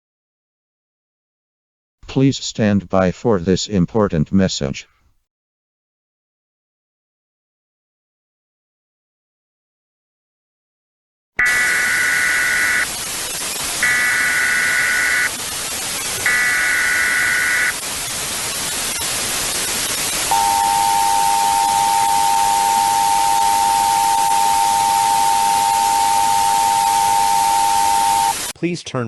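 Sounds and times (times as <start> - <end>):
warbling digital data bursts: 11.4 - 28.5
static hiss: 11.4 - 28.6
two-tone attention signal: 20.3 - 28.5.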